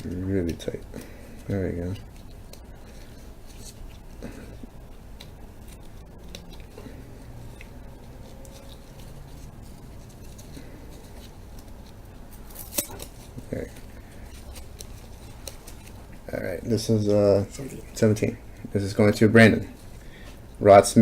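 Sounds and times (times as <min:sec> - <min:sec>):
cards clicking: 0:00.0 - 0:16.2.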